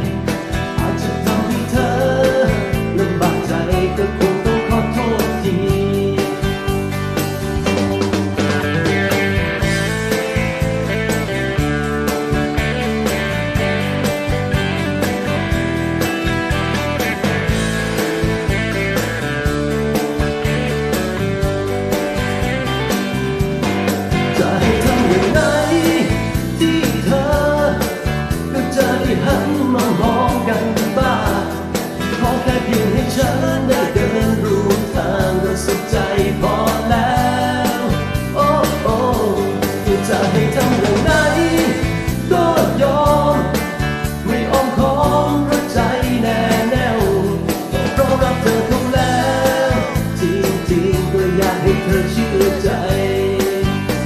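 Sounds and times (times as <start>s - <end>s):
person singing: 0.0s - 7.0s, 22.9s - 54.0s
guitar with steady beat: 0.0s - 54.0s.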